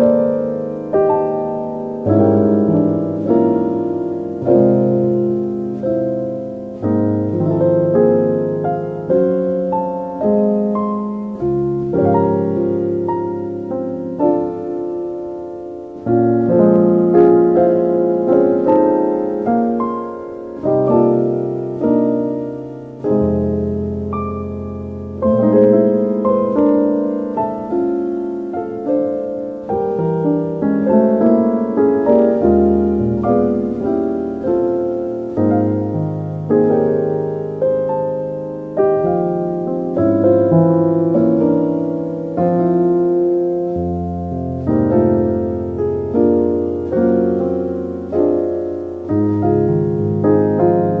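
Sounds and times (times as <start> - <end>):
soft solo piano: 0.0 - 51.0.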